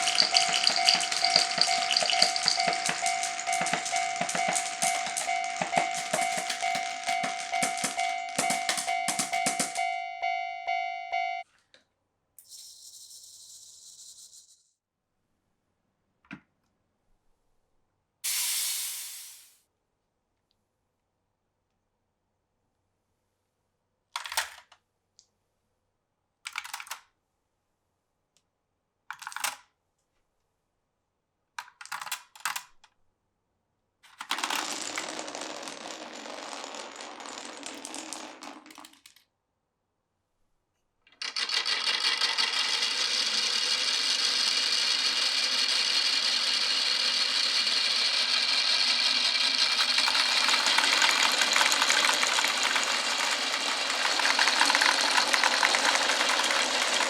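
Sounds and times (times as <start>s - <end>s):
marbles clacking: 0.0s - 10.6s, 34.2s - 39.2s, 41.2s - 57.0s
marbles rolling on wooden track: 0.0s - 10.6s, 34.1s - 39.2s, 41.1s - 57.0s.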